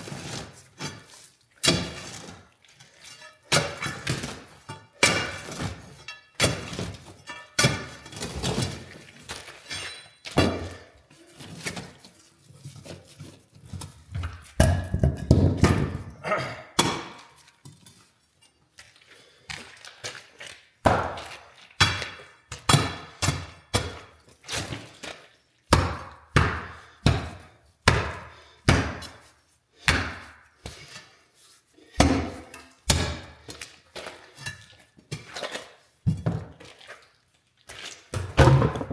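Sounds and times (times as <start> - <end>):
concrete knocking and grinding: 13.8 - 16.2, 38.2 - 38.9
heavy blows striking concrete: 14.6 - 17.2, 20.9 - 23.9, 25.7 - 29.2, 29.9 - 30.3, 32.0 - 33.4, 38.3 - 38.9.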